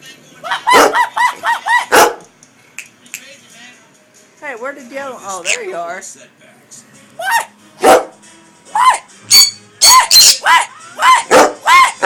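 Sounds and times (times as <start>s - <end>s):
conures screeching: 8.8s - 12.0s.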